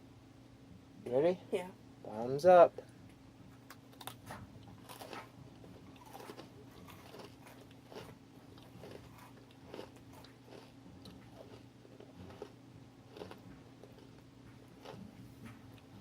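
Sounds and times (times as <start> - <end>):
crunching and chewing cookies: 3.5 - 16.0.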